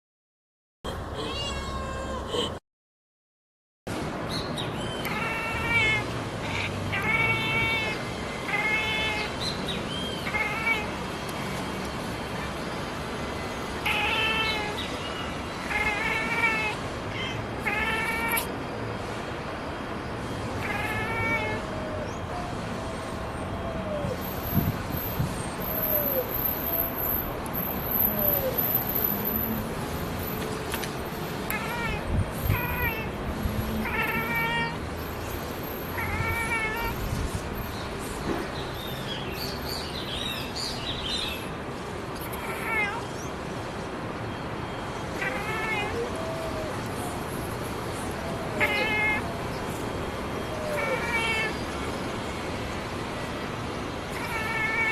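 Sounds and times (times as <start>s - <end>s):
cat chirping: 4.8s - 11.0s, 13.8s - 18.5s, 20.6s - 21.7s, 31.5s - 33.2s, 33.8s - 34.8s, 35.9s - 37.2s, 42.2s - 43.3s, 44.9s - 47.2s, 48.0s - 51.7s, 54.1s - 54.9s.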